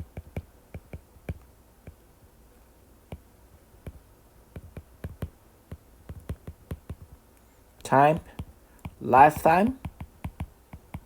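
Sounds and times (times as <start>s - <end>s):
light clicks and taps of writing: 0.0s - 2.1s, 3.1s - 7.5s, 8.2s - 9.0s, 9.8s - 11.0s.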